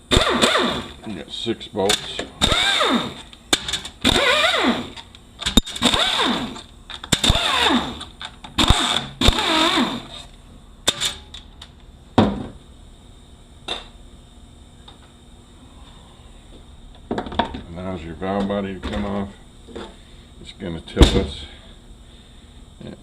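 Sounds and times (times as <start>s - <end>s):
power tool whirring: 0.0s - 1.0s, 2.4s - 10.3s.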